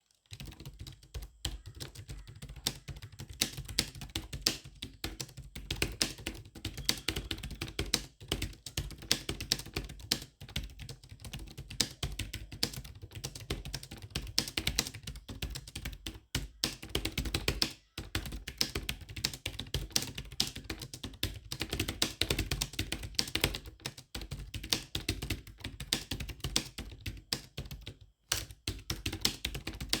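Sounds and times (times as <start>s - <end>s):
fast typing on keyboard: 0.2s - 30.0s.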